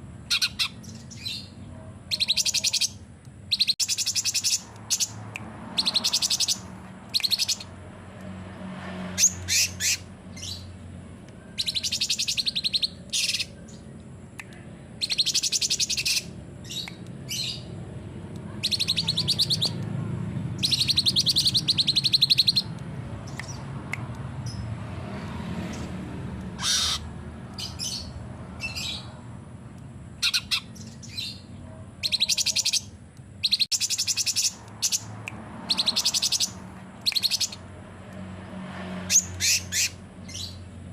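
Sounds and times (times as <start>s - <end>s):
bird chattering trills: 0.3s - 1.5s, 2.1s - 5.2s, 5.8s - 7.7s, 11.5s - 13.9s, 15.0s - 17.7s, 18.6s - 19.8s, 20.6s - 22.7s, 26.6s - 29.1s, 30.2s - 31.4s, 32.0s - 37.6s.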